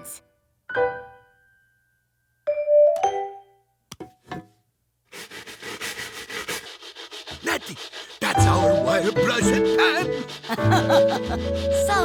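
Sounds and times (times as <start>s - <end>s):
wire brush scraping a pan: 7.4s - 12.0s.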